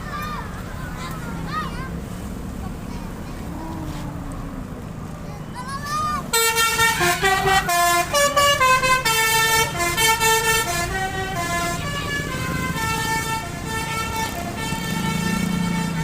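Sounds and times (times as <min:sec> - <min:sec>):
multi-note bus horn tune: 0:06.3 - 0:16.0.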